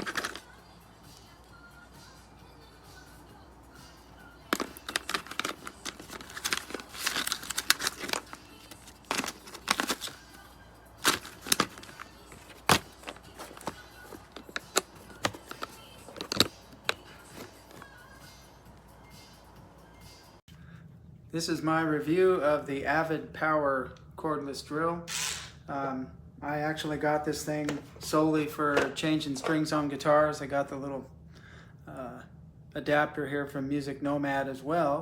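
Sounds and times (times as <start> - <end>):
small hard objects clicking and rustling: 0.0 - 0.5, 4.5 - 10.3, 11.0 - 17.9.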